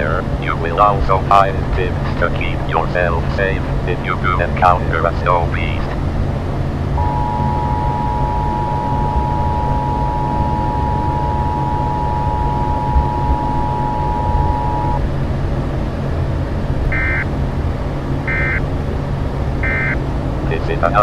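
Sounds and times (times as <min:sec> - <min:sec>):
low vehicle rumble: 0:00.0 - 0:21.0
two-tone electronic alert tone: 0:07.0 - 0:15.0, 0:16.9 - 0:17.2, 0:18.3 - 0:18.6, 0:19.6 - 0:20.0.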